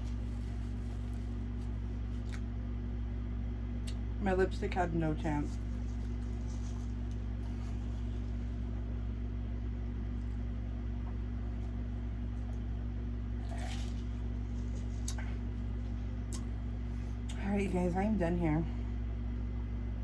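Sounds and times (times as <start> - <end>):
faint rustles and clicks: 0.0 - 2.5, 5.4 - 8.8, 13.6 - 16.1
low electrical hum: 0.0 - 20.0.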